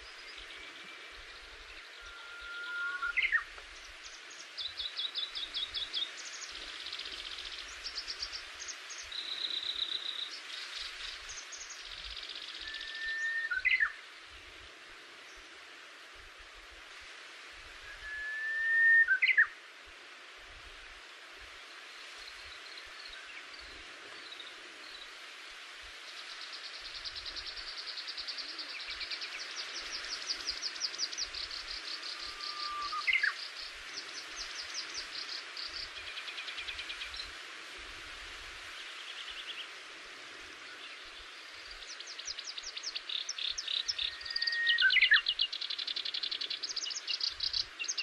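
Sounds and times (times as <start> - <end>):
wild birds singing: 0.0 - 14.6, 25.8 - 48.0
background hiss: 0.0 - 48.0
loud whistled bird call: 2.0 - 3.4, 12.6 - 13.9, 17.9 - 19.5, 32.2 - 33.4, 44.0 - 45.3.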